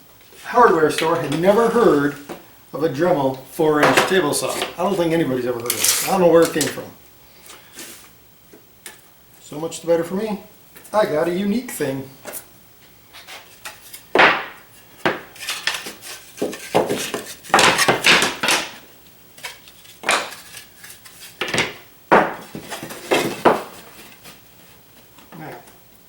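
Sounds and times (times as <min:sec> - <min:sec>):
hard objects knocking and clattering: 0:03.8 - 0:04.8, 0:14.1 - 0:18.8, 0:19.4 - 0:24.2.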